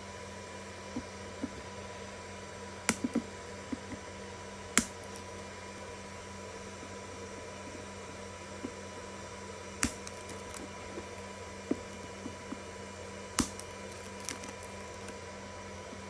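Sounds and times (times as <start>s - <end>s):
steady hum: 0.0s - 16.0s
plastic zip ties clicking: 13.4s - 15.1s.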